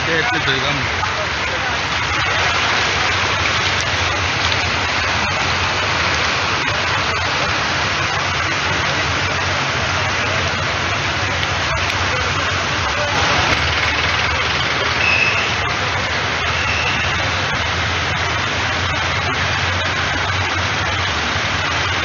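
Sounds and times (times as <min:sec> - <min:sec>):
falling water rushing: 0:00.0 - 0:22.0.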